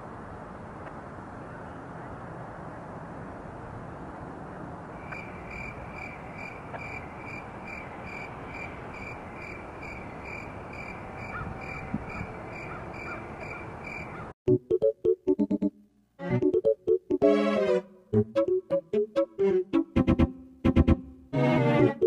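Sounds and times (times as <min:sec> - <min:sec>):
steady background hiss: 0:00.0 - 0:14.2.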